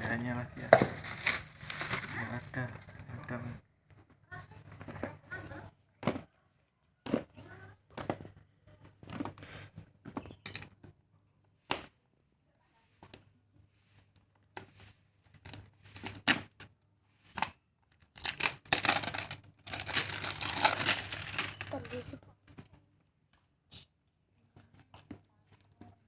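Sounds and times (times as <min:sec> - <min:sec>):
packaging crinkling and tearing: 0:00.6 - 0:03.0, 0:18.0 - 0:22.0
packaging clicks and taps: 0:17.4 - 0:22.0.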